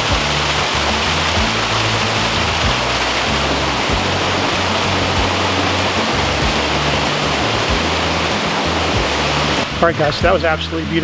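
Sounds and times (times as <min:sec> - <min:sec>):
low sustained background music: 0:00.0 - 0:11.0
waterfall roaring: 0:00.0 - 0:11.0.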